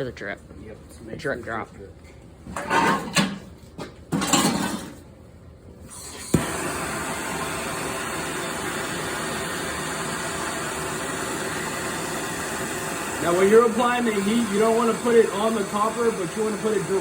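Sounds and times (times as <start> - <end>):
torch flame hissing: 5.9 - 17.0
torch igniter click: 6.1 - 16.9.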